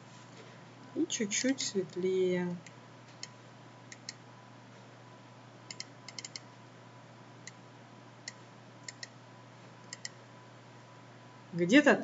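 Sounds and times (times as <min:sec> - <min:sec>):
computer mouse clicks: 0:02.5 - 0:04.2, 0:05.7 - 0:06.5, 0:08.2 - 0:09.2, 0:09.9 - 0:10.2.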